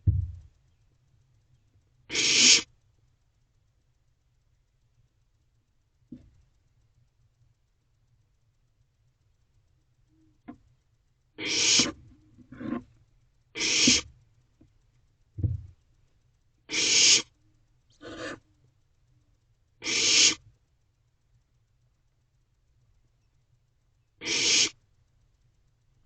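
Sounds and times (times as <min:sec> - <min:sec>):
owlets hissing: 0:02.1 - 0:02.7, 0:11.4 - 0:12.0, 0:13.6 - 0:14.0, 0:19.8 - 0:20.4, 0:24.2 - 0:24.8.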